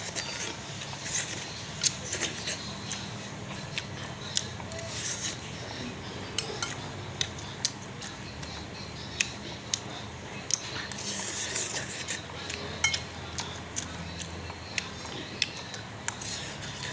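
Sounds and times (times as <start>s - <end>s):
spoon clinking against a bowl: 6.4s - 6.9s, 12.8s - 13.4s.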